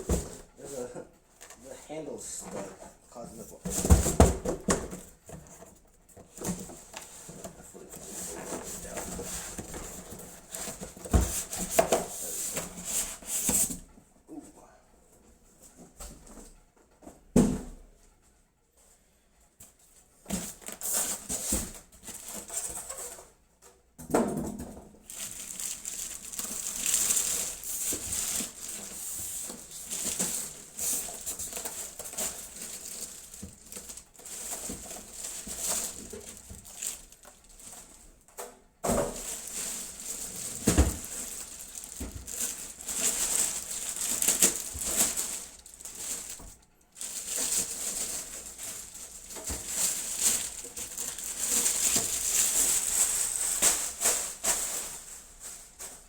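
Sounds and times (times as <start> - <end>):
plastic packaging crinkling: 25.0 - 38.2, 38.8 - 56.0.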